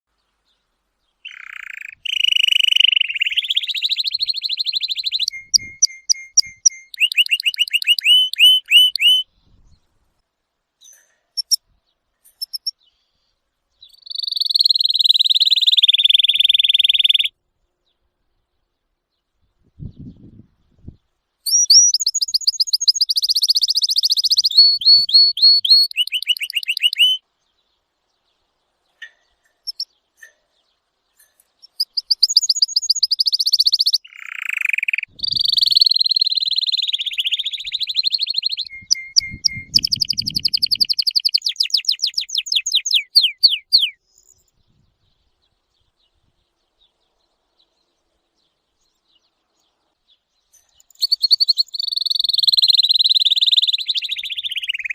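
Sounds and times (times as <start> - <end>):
songbird trilling: 1.2 - 9.3, 10.8 - 11.6, 12.3 - 12.9, 13.8 - 17.3, 21.5 - 27.2, 29.0 - 30.4, 31.2 - 44.6, 50.5 - 54.9.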